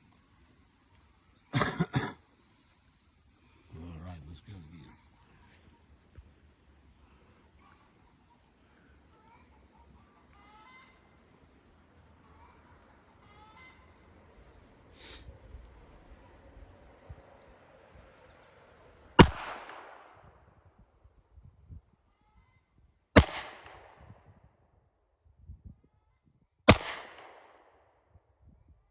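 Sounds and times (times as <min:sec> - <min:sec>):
insects buzzing: 0:00.0 - 0:23.8
insect chirping: 0:00.0 - 0:28.9
pistol shot with echo: 0:19.2 - 0:20.3, 0:23.2 - 0:24.0, 0:26.7 - 0:27.7.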